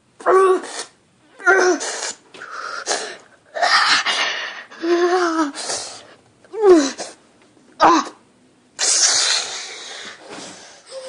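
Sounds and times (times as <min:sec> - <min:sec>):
boy gasping hisses: 0:01.5 - 0:07.2, 0:08.8 - 0:11.0
boy crying out: 0:06.5 - 0:07.0.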